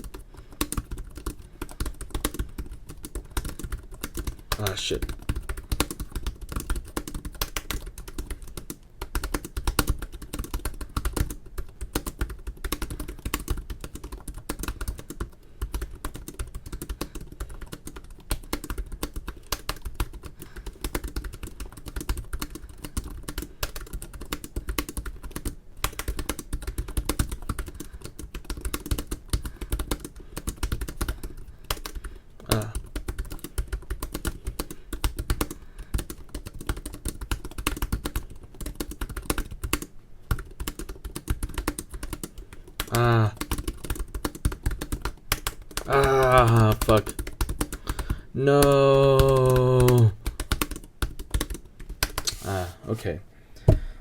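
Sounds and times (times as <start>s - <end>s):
fast laptop keyboard typing: 0.0s - 52.3s.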